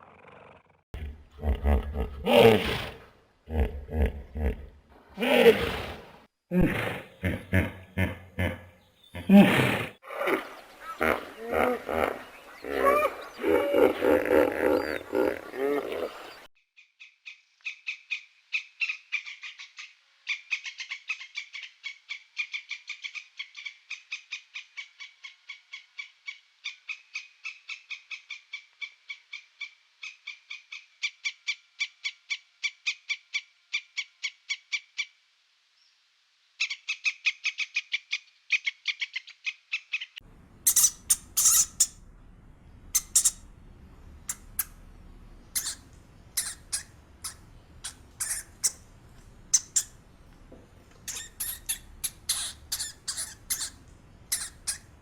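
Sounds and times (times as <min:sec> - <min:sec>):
sharp high squeaks and clicks: 0:40.7 - 0:42.0, 0:43.0 - 0:43.4, 0:45.6 - 0:50.0, 0:50.9 - 0:54.9.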